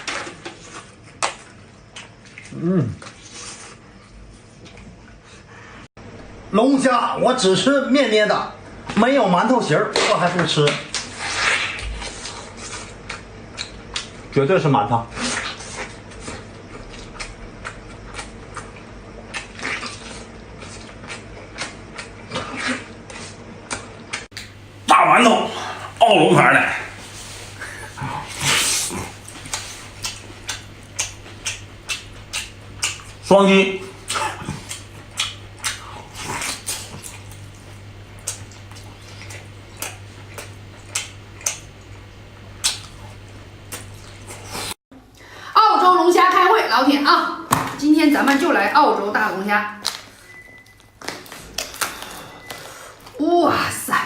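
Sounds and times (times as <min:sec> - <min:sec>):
low electrical hum: 0:00.0 - 0:54.0
wet mouth smacking while eating: 0:28.3 - 0:33.2, 0:34.0 - 0:42.0, 0:42.6 - 0:44.8.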